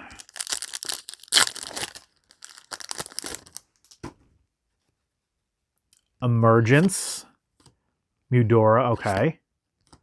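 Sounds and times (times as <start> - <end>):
foil wrapper crinkling and tearing: 0.0 - 4.0.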